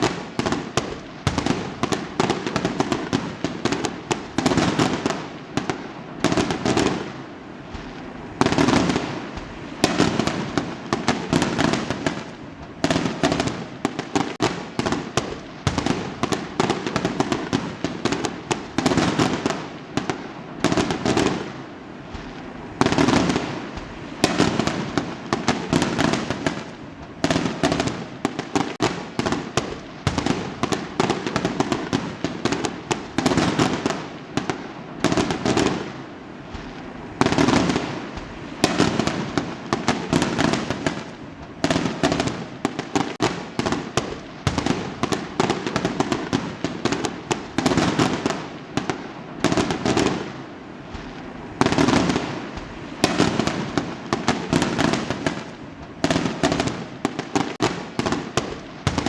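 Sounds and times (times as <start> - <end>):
fireworks bangs and crackling: 0.0 - 59.0.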